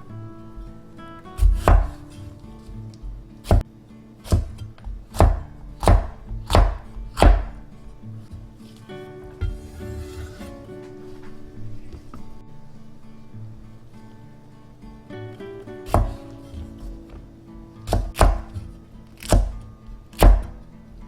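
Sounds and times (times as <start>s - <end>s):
knife chopping on cutting board: 1.4s - 2.2s, 3.4s - 3.6s, 4.3s - 7.6s, 15.9s - 16.8s, 17.9s - 19.6s, 20.2s - 20.6s.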